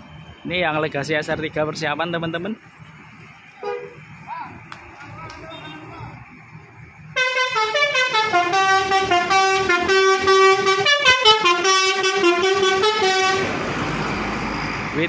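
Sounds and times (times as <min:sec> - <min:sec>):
multi-tone bus horn melody: 0:03.6 - 0:04.0, 0:07.2 - 0:13.6.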